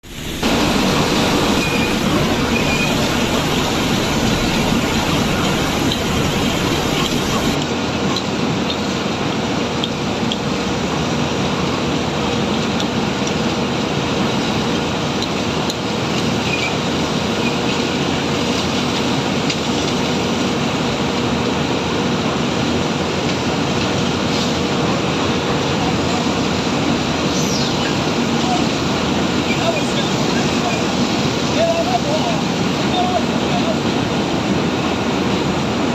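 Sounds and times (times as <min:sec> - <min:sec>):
hydraulics rumbling: 0:00.0 - 0:07.6
excavator diesel engine running: 0:00.1 - 0:07.6
faint steady hum: 0:00.1 - 0:07.6.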